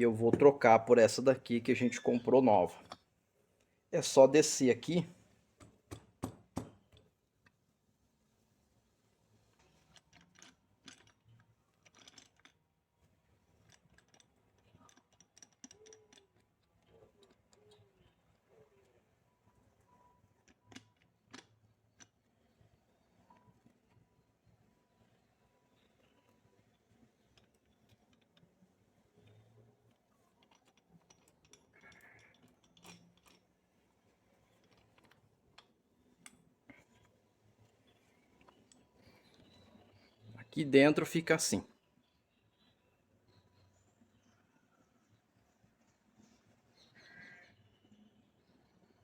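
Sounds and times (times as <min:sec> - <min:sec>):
small steel parts clicking: 0:09.5 - 0:12.8, 0:13.6 - 0:18.5, 0:29.2 - 0:33.7.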